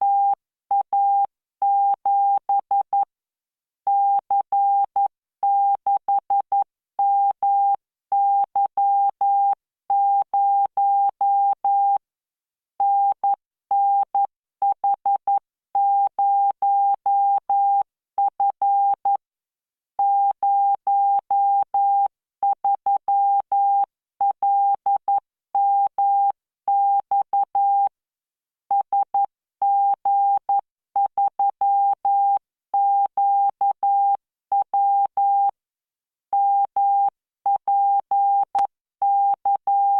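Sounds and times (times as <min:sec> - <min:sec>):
morse code beeps: 0:37.7 - 0:39.9.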